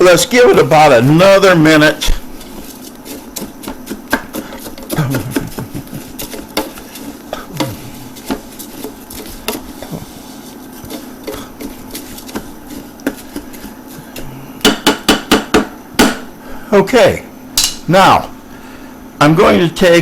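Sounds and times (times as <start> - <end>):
utensil scraping a pan: 0.1 - 14.4
loud taps on a pan: 14.6 - 16.3.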